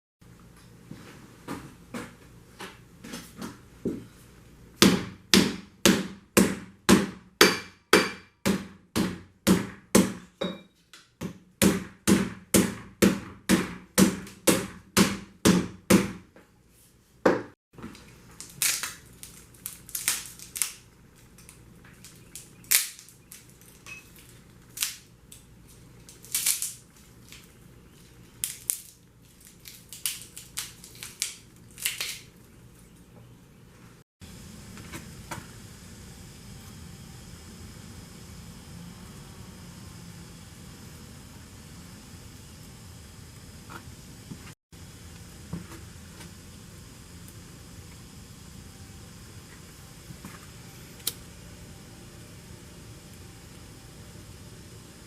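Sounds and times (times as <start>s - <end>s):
hammer striking steel on anvil: 4.8s - 10.8s.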